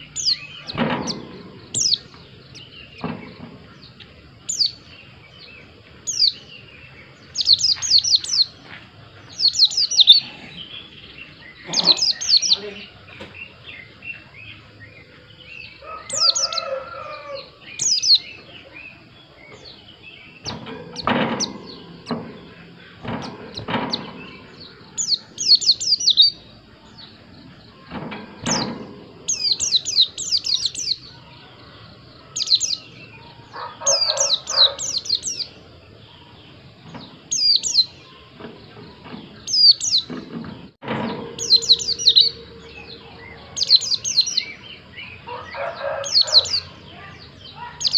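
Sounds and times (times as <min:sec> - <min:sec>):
bird chirping: 0:00.0 - 0:47.9
lower bird calls: 0:00.0 - 0:47.9
sharp knocks: 0:00.7 - 0:02.3, 0:20.4 - 0:25.2, 0:27.8 - 0:30.6.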